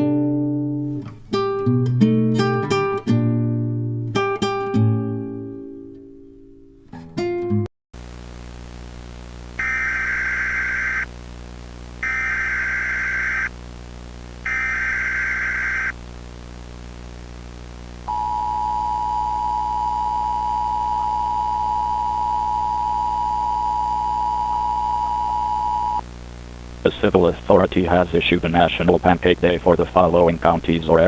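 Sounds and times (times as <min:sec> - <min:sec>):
static hiss: 0:08.0 - 0:18.2, 0:26.0 - 0:31.0
screeching digital data tones: 0:09.6 - 0:11.1, 0:12.0 - 0:13.5, 0:14.5 - 0:16.0
two-tone attention signal: 0:14.5 - 0:15.9.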